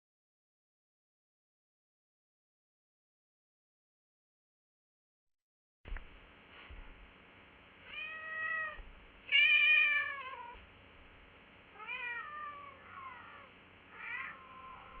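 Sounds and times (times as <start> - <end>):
cat meowing: 7.9 - 10.6, 11.7 - 15.0.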